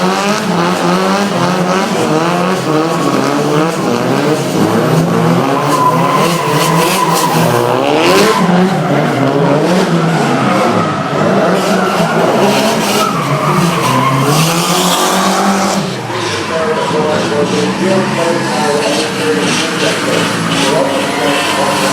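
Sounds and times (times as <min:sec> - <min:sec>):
car engines revving hard: 0:00.0 - 0:21.9
tyres squealing: 0:05.4 - 0:15.4, 0:16.0 - 0:21.9.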